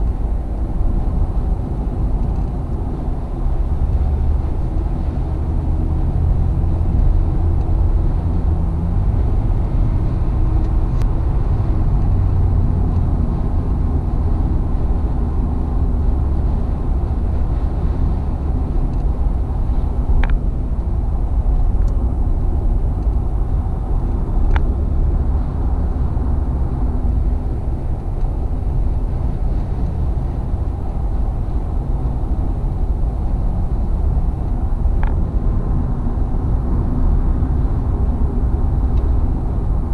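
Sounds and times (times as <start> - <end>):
engine and tyre rumble: 0.0 - 39.9.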